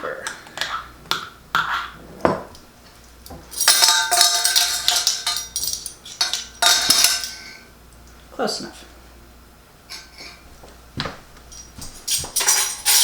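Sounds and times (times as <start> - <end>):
metal spoon clinking on kitchenware: 3.6 - 7.6, 11.6 - 13.0.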